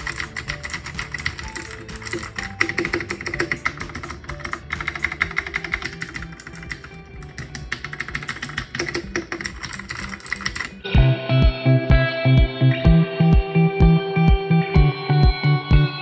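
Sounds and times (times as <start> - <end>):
mechanical keyboard typing: 0.0 - 10.8
background music with bass beat: 0.0 - 16.0.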